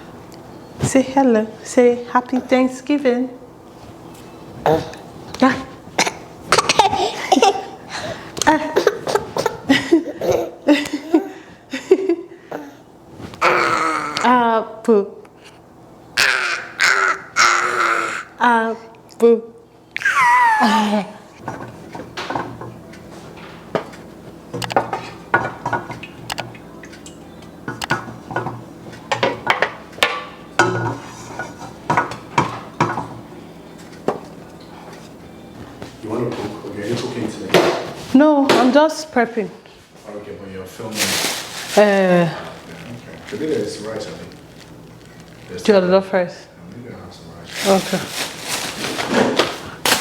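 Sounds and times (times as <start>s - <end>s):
person laughing: 6.6s - 7.8s, 8.5s - 12.3s, 20.0s - 21.3s
person vocalizing: 13.4s - 14.4s, 16.2s - 18.4s, 20.0s - 21.3s
dishes and pots clinking: 24.8s - 26.2s, 26.9s - 33.3s.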